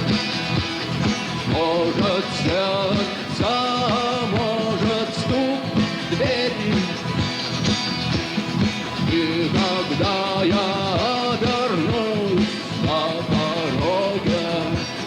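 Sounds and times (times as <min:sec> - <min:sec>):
drums: 0:00.0 - 0:15.0
electric guitars: 0:00.0 - 0:15.0
person singing: 0:01.4 - 0:07.2, 0:08.9 - 0:15.0.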